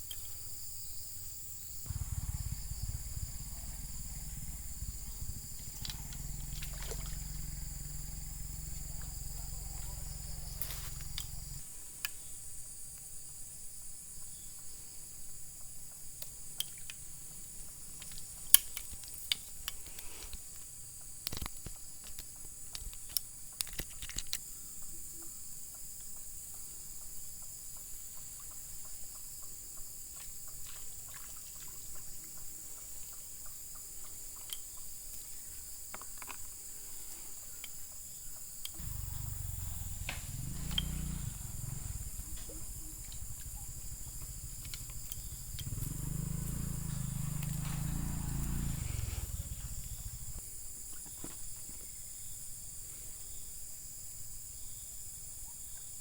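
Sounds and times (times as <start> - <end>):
high-pitched insect chorus: 0.0 - 56.0
low rumble: 1.8 - 11.6, 38.8 - 50.4
small clicks and taps: 18.0 - 24.4.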